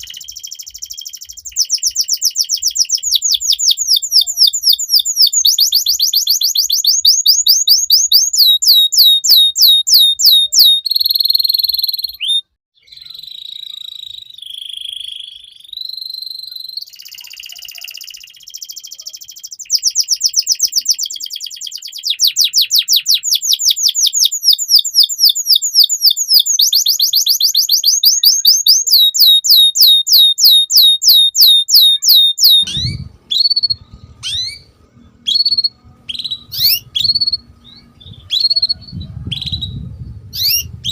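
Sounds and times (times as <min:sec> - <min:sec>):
canary singing trills: 0:00.0 - 0:40.9
low hum: 0:32.6 - 0:40.9.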